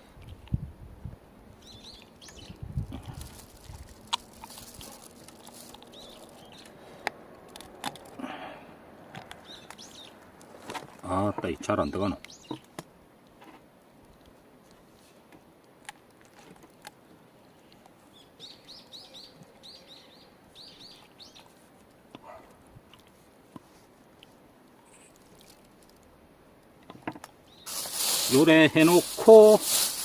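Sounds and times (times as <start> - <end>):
small bird chirping: 1.6 - 2.6, 5.6 - 6.8, 9.4 - 10.2, 11.8 - 12.7, 18.1 - 21.5.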